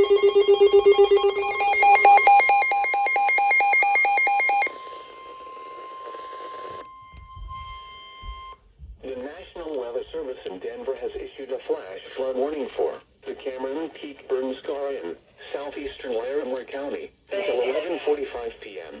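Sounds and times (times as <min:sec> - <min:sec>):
pulsing electronic beep: 0:00.0 - 0:04.7
steady alarm tone: 0:00.0 - 0:08.6
radio static: 0:17.3 - 0:19.0.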